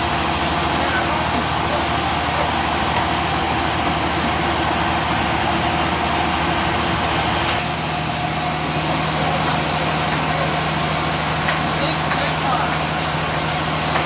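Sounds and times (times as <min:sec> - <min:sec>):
engine idling: 0:00.0 - 0:14.0.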